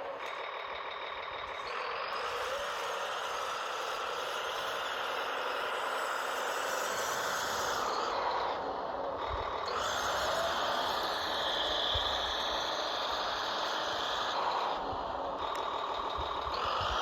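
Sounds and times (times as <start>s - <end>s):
electric motor whining: 0.0s - 17.0s.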